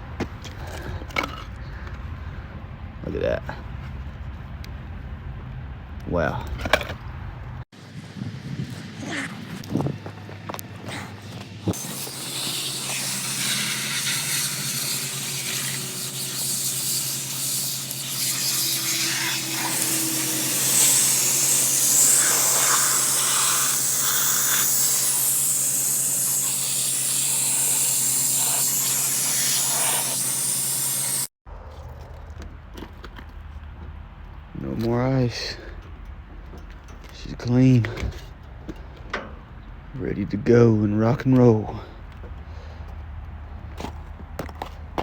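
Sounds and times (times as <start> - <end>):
water spraying hiss: 11.7 - 31.3.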